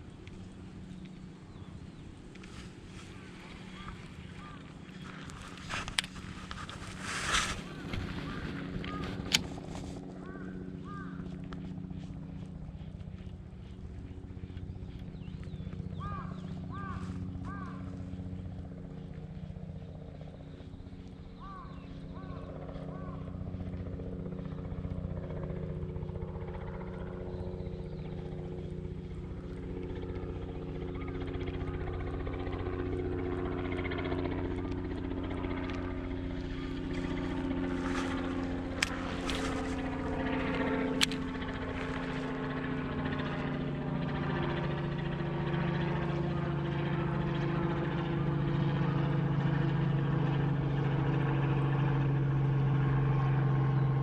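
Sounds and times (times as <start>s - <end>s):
engine droning: 0.0s - 54.0s
sharp clicks: 40.9s - 42.0s.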